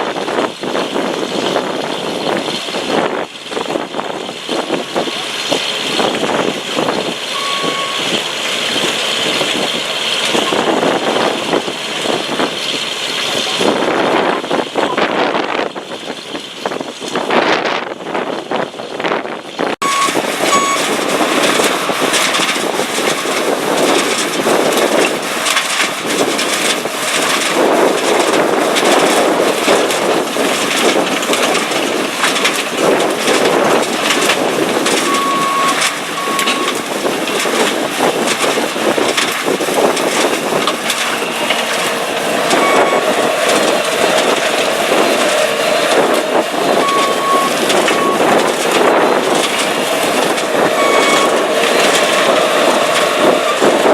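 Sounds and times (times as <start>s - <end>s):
short high beeps: 7.4s - 8.1s, 19.8s - 20.9s, 35.1s - 36.8s, 42.6s - 43.0s, 46.8s - 48.3s, 50.8s - 51.4s
screening machine running: 19.8s - 53.9s
soil and stones clattering: 19.9s - 53.9s.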